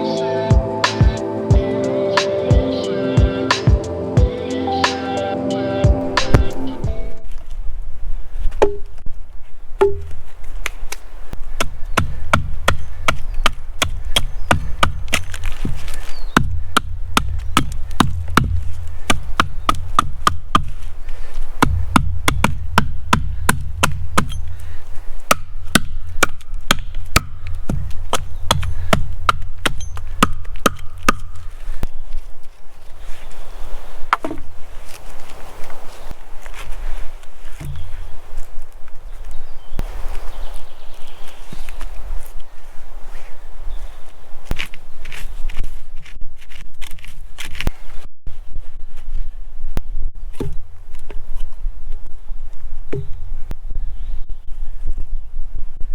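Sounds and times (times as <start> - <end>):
footsteps on forest floor: 6.3 - 47.9
wood being chopped by hand: 8.6 - 9.0, 9.8 - 10.8, 11.5 - 20.9, 21.6 - 31.8, 34.1 - 34.5, 37.6 - 38.0, 50.3 - 50.7
twigs snapping and crackling: 10.0 - 32.9, 34.8 - 39.5.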